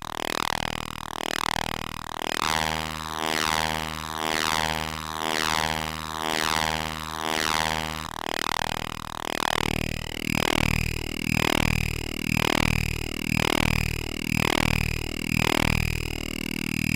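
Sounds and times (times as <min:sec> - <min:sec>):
low buzzy synthesizer drone: 0:00.1 - 0:16.9
falling synthesizer filter sweep: 0:09.3 - 0:16.9.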